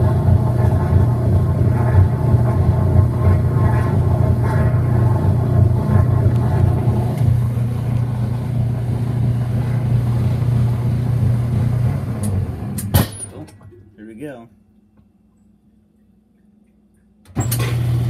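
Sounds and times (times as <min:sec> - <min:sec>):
rushing water in washer: 0:00.0 - 0:13.2, 0:17.4 - 0:18.0
washing machine motor hum: 0:00.0 - 0:14.4, 0:17.2 - 0:18.0.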